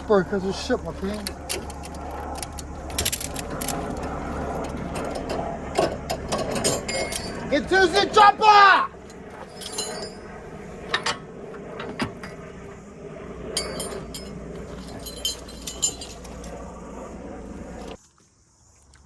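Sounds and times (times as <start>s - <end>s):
low engine hum: 0.0s - 18.0s
metallic clinks and rattles: 1.0s - 7.5s, 9.1s - 11.2s, 13.5s - 16.6s.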